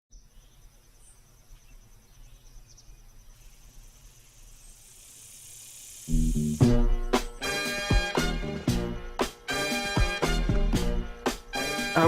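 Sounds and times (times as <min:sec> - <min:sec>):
insect trilling: 0:00.3 - 0:08.1.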